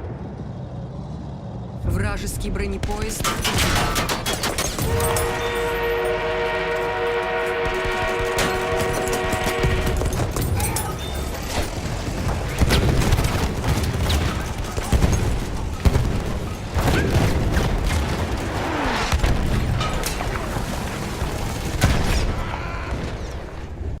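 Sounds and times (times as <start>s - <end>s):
explosions: 11.4s - 24.0s
dense gunfire: 11.7s - 23.4s.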